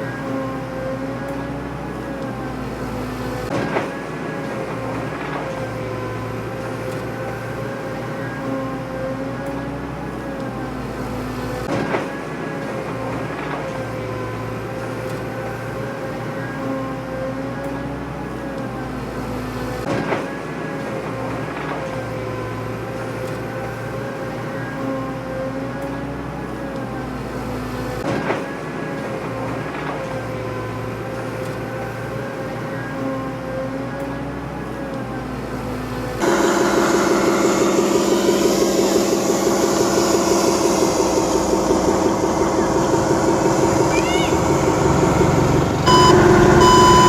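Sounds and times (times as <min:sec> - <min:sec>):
mechanical drone with low hum: 0:00.0 - 0:47.0
electric motors whining: 0:30.3 - 0:47.0.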